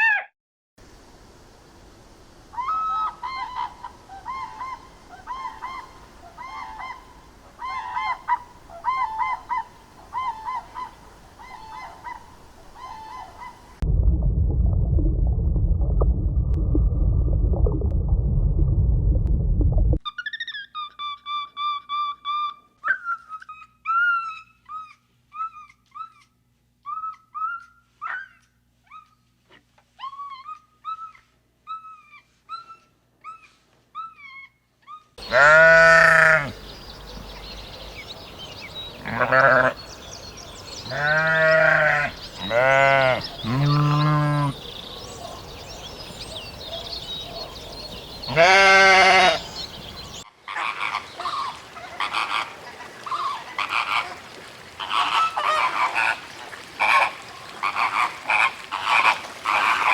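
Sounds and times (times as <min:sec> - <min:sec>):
livestock bleating: 0:35.2 - 0:36.6, 0:39.0 - 0:39.8, 0:40.9 - 0:44.6, 0:48.3 - 0:49.5.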